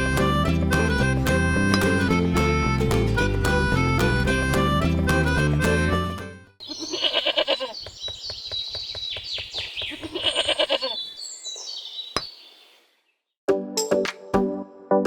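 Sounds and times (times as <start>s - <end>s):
goats bleating: 6.6s - 7.8s, 9.9s - 11.0s.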